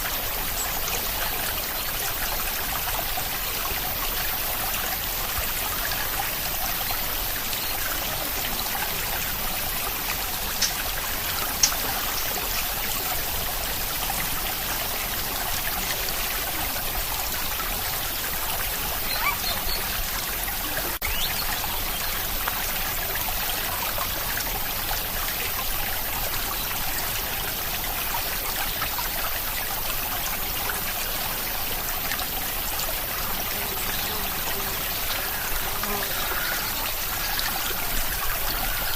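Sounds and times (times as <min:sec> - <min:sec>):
steady rain: 0:00.0 - 0:38.9
water trickling: 0:00.0 - 0:38.9.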